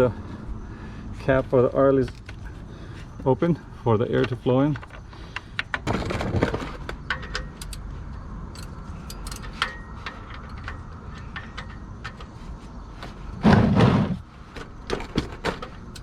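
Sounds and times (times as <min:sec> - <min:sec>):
metallic clicks and clinks: 0:06.8 - 0:12.4, 0:15.6 - 0:16.0
scraping thump: 0:13.4 - 0:14.2.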